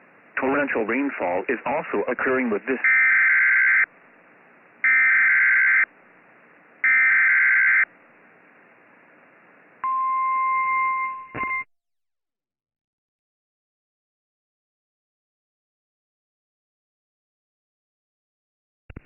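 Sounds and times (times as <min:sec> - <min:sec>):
high alarm beep: 0:02.8 - 0:03.9, 0:04.8 - 0:05.9, 0:06.8 - 0:07.9, 0:09.8 - 0:11.7.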